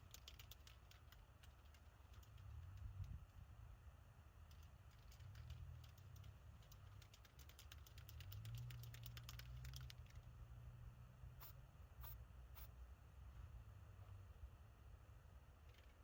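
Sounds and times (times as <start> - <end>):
light clicks and taps of small parts: 0.0 - 3.4, 4.4 - 10.3
low steady hum: 0.0 - 16.0.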